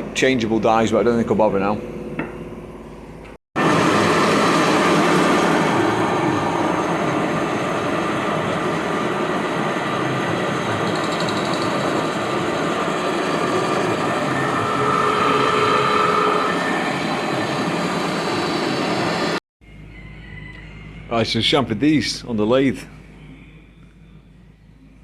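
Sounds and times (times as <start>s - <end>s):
metal lathe machining steel: 3.6s - 19.4s.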